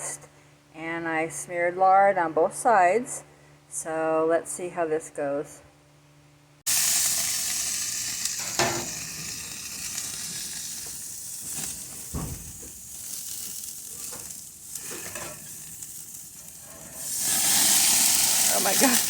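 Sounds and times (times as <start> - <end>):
patties sizzling on a grill: 6.7 - 19.0.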